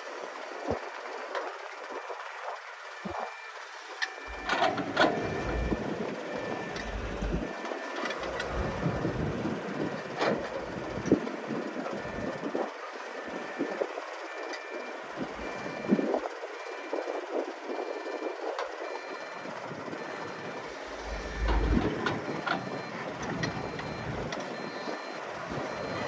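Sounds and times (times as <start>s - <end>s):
backup alarm beeping: 4.2s - 9.4s, 14.6s - 17.0s, 17.7s - 26.0s
machinery clanks: 4.3s - 5.8s
engine rumble: 4.3s - 9.6s, 20.1s - 26.0s.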